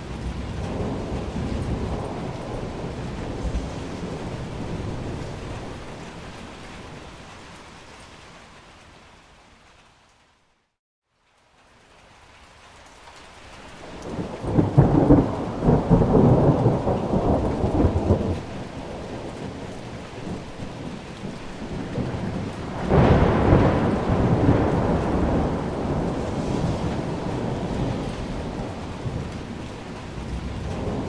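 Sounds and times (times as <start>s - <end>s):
thunder rumbling: 0.0s - 7.5s, 13.8s - 31.0s
rain hissing: 0.0s - 10.8s, 11.4s - 31.0s.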